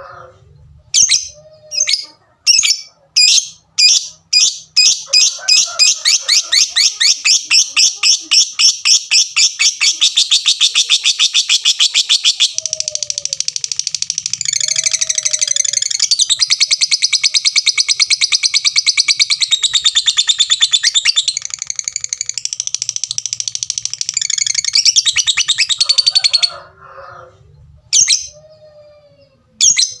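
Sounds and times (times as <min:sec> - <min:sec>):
lovebird chattering trill: 0:01.0 - 0:26.6
lovebird ticking: 0:21.3 - 0:25.5.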